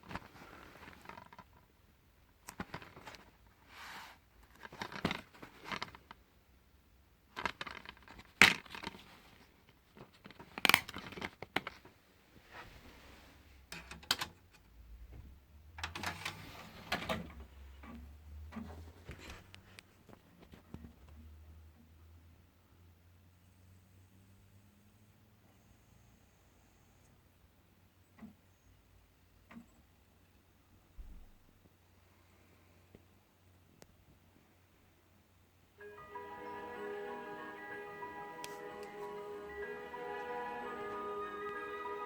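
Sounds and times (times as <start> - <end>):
objects being handled: 0.0 - 1.7, 2.4 - 6.2, 7.3 - 21.2.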